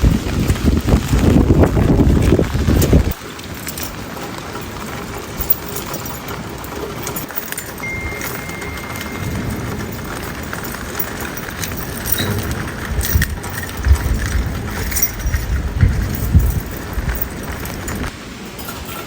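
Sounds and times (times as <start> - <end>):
wind gusts buffeting microphone: 0.0 - 18.4
wind and rain hissing: 0.0 - 19.0.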